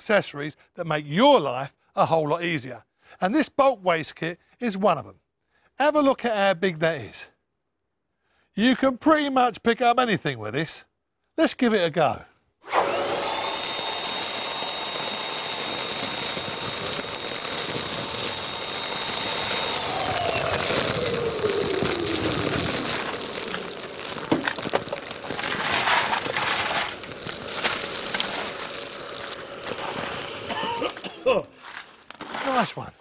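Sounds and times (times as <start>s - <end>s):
vacuum cleaner whining: 12.6s - 31.8s
debris rattling through hose: 12.8s - 32.7s.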